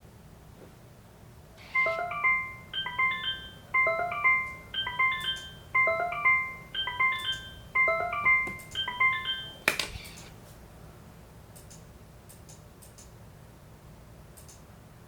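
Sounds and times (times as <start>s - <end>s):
alarm clock chime ringing: 1.6s - 9.7s.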